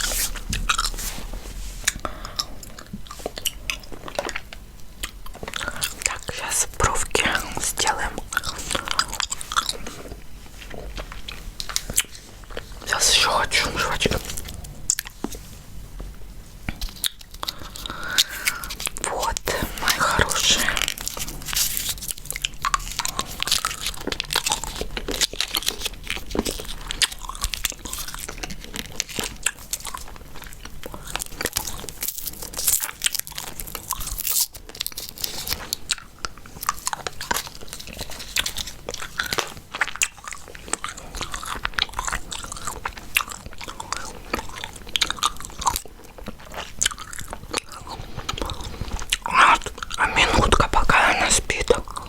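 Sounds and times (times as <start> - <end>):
gum chewing wet clicks: 36.6 - 52.0.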